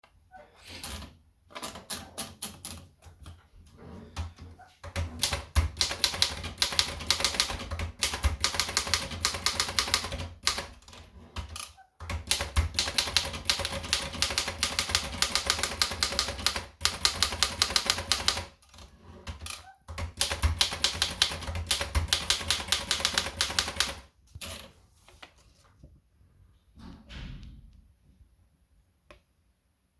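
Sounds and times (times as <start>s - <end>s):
typewriter typing fast: 4.9s - 24.1s.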